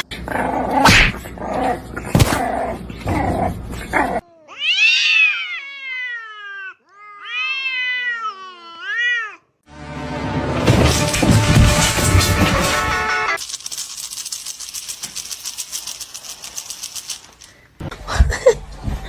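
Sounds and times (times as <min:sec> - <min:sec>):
cat yowling: 0:04.2 - 0:09.4
noisy clatter: 0:10.6 - 0:17.6.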